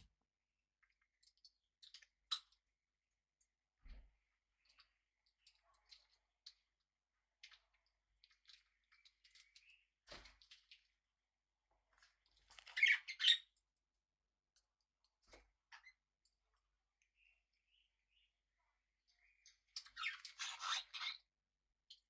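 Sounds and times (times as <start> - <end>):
parrots chirping and squawking: 12.6 - 13.5, 19.8 - 21.2.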